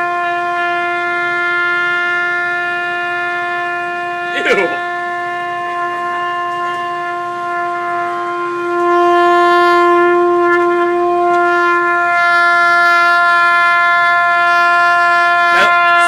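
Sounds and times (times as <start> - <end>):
trumpet long steady note: 0.0 - 16.0.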